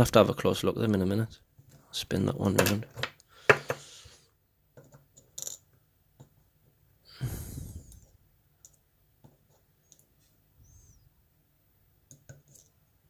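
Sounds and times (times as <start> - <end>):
loud breath near microphone: 3.3 - 4.4, 7.1 - 8.1.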